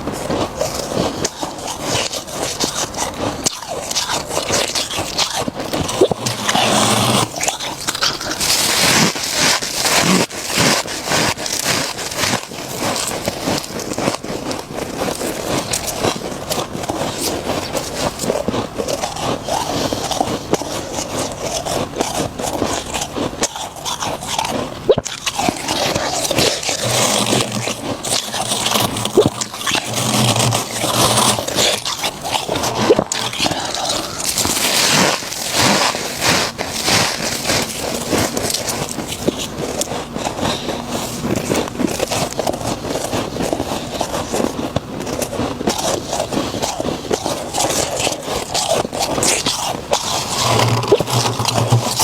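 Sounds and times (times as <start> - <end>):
frost crunching and crackling: 0.0 - 52.0.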